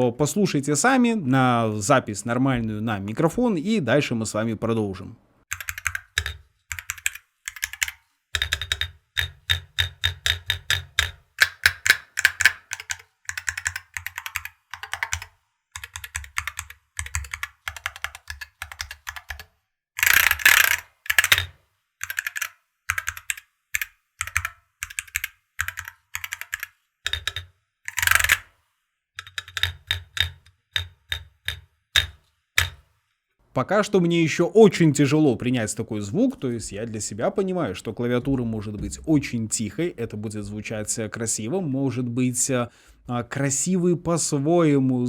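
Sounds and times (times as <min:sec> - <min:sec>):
keyboard typing: 0:05.5 - 0:28.4, 0:29.2 - 0:32.8.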